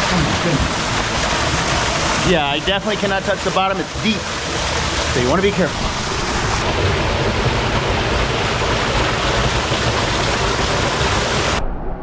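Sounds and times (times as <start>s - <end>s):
water rushing: 0.0s - 11.6s.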